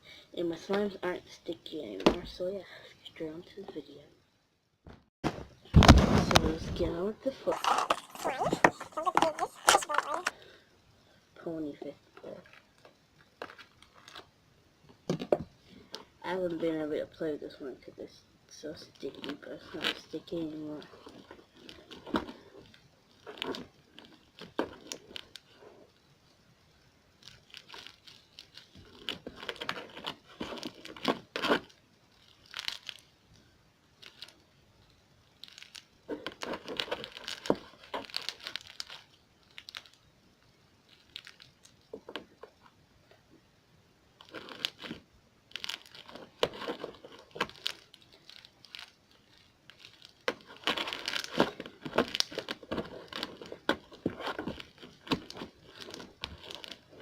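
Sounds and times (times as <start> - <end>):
slime crackling and popping: 19.0 - 26.1, 26.7 - 42.7, 44.1 - 57.0.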